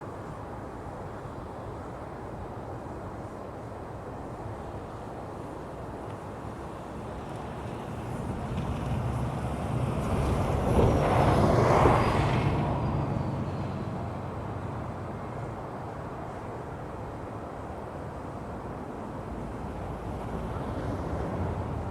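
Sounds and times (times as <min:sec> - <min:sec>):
vehicle passing by: 0:07.5 - 0:15.0.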